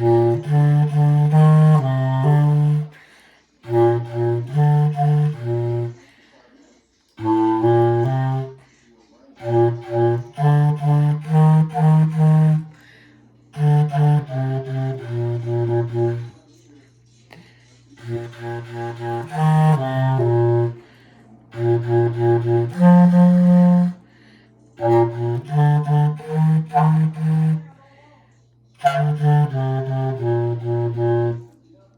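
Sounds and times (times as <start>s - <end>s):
low-pitched wind instrument: 0.0s - 3.0s, 3.6s - 6.0s, 7.2s - 8.6s, 9.4s - 12.8s, 13.5s - 16.4s, 18.0s - 20.9s, 21.5s - 24.1s, 24.8s - 27.7s, 28.8s - 31.6s.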